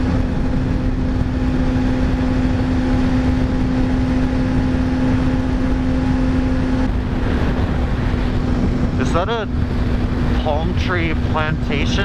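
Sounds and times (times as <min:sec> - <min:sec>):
heavy wind rush: 0:00.0 - 0:12.0
motorcycle engine droning: 0:00.0 - 0:12.0.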